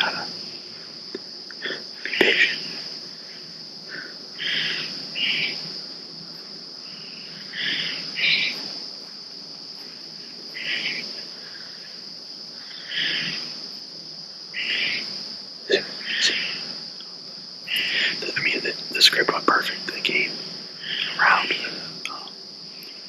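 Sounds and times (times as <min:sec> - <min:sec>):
insect chorus: 0:00.0 - 0:23.0.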